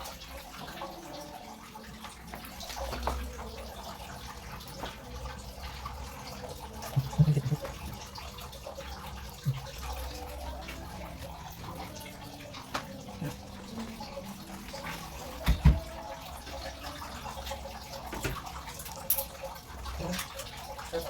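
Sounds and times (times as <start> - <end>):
water running: 0.0 - 21.0.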